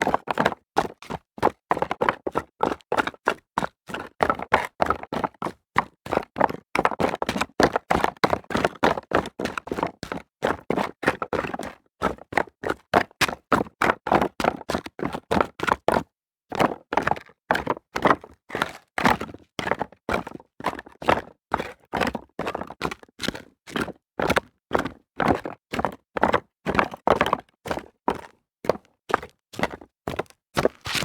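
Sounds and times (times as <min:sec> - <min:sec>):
footsteps running on rocks: 0:29.6 - 0:31.0.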